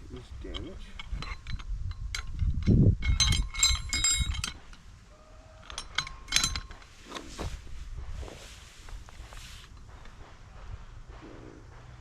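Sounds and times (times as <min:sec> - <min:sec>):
metal clinking and rattling: 0:00.0 - 0:08.4.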